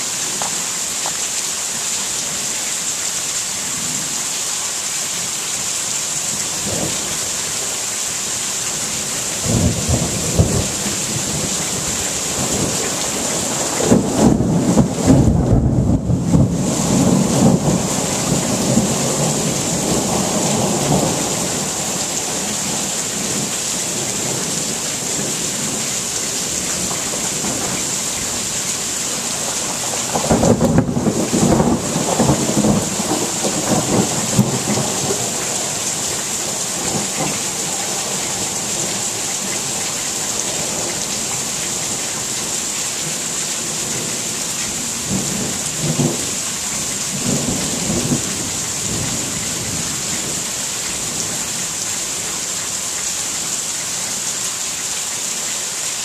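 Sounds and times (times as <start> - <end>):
steady rain: 0.0 - 56.0
thunder rumbling: 9.4 - 25.8, 29.1 - 42.5, 43.1 - 50.4.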